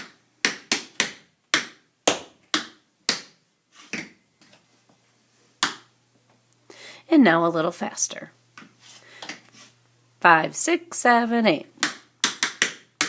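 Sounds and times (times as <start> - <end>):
tap shoes striking hard floor: 0.0 - 4.6, 11.8 - 13.0
soft scrapes of tap shoes: 8.6 - 9.8.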